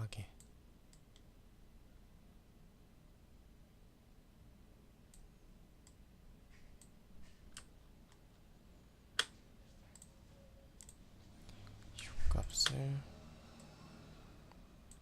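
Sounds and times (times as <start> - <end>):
computer mouse clicks: 5.1 - 8.2, 9.9 - 10.1, 10.8 - 12.8, 13.5 - 13.8, 14.5 - 15.0.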